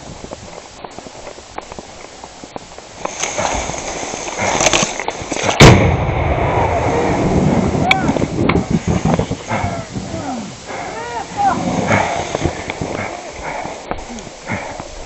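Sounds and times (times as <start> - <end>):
crackling noise: 0.0 - 15.0
low rumbling hiss: 2.9 - 15.0
loud bang: 5.6 - 8.1.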